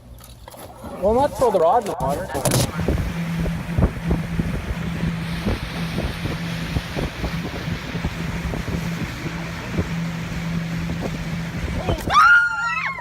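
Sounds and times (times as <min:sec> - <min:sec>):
steady low hum: 0:00.0 - 0:13.0
wind buffeting microphone: 0:02.4 - 0:12.3
irregular low thumps: 0:02.7 - 0:11.9.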